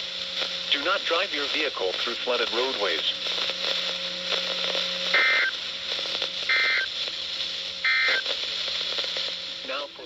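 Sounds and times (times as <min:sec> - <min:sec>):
data warble bursts: 0:05.1 - 0:05.5, 0:06.5 - 0:06.9, 0:07.8 - 0:08.2.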